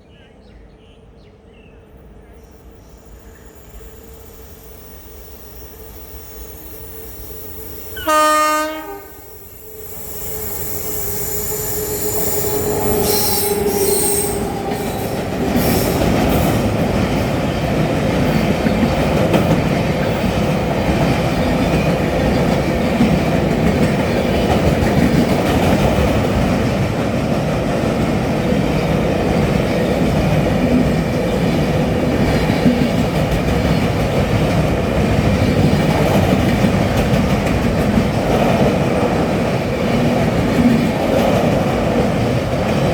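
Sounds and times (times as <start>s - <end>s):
train rolling past: 0.4s - 42.9s
wheel squeal: 9.3s - 15.0s.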